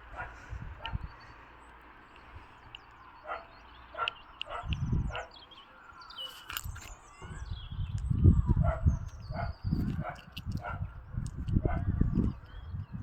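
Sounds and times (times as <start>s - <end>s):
dog barking: 0.1s - 1.0s, 3.2s - 5.4s, 8.6s - 10.9s, 11.6s - 12.0s
high bird chirps: 2.1s - 10.1s.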